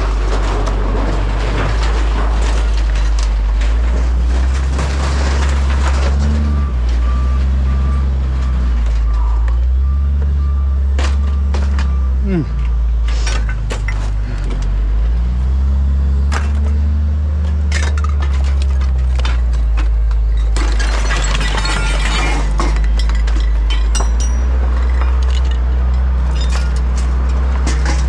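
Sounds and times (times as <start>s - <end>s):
hard objects clinking: 17.7s - 28.0s.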